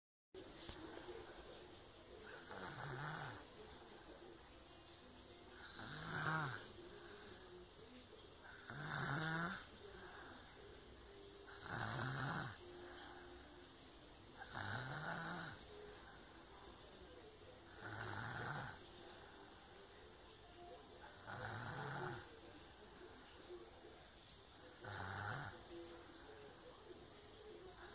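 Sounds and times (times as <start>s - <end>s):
child snoring: 2.3s - 3.4s, 5.6s - 6.6s, 8.5s - 10.4s, 11.5s - 12.6s, 14.4s - 15.6s, 17.7s - 18.8s, 21.1s - 22.3s, 24.8s - 25.6s.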